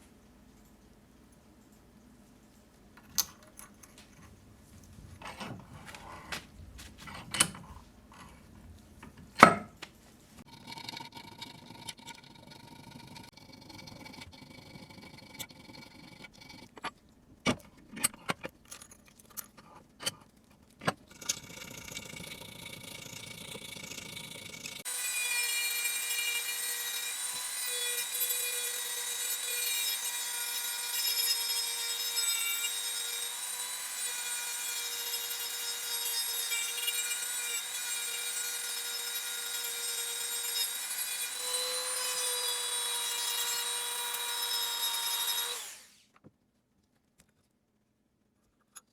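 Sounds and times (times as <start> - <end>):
power tool whining: 21.1 - 46.0.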